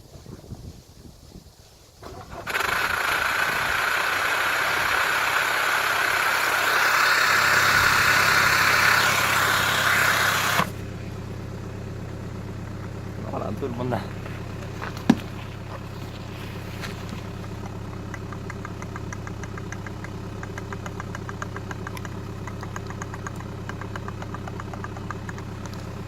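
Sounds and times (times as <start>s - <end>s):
car engine idling: 2.0s - 26.0s
light ticks: 17.3s - 26.0s.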